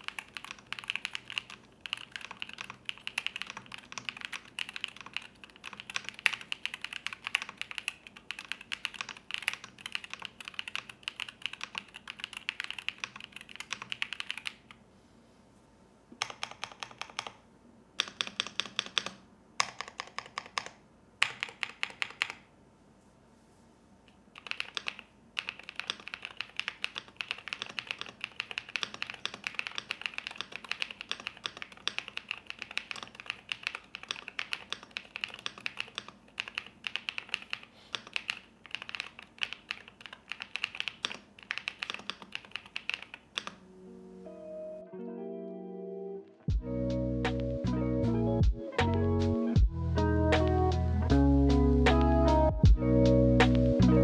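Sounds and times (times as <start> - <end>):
mechanical keyboard typing: 0.0 - 14.8, 16.2 - 17.4, 18.0 - 22.5, 24.1 - 43.6.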